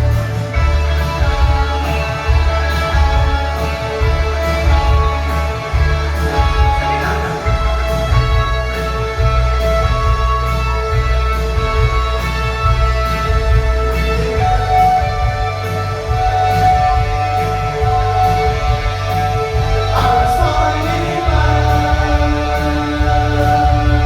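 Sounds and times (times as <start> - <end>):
bass line: 0.0 - 24.0
held guitar and synth notes: 0.0 - 24.0.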